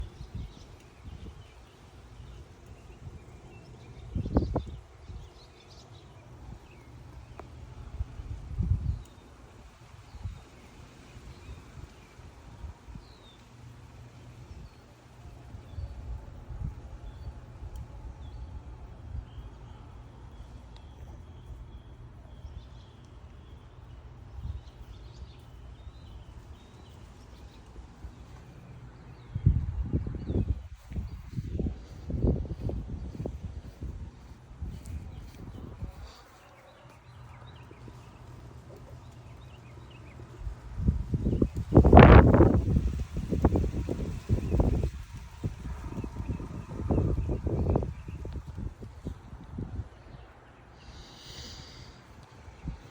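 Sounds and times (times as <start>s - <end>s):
gusty wind buffeting microphone: 0.0s - 5.4s, 7.6s - 9.1s, 24.3s - 36.5s, 39.6s - 50.6s, 52.0s - 52.9s.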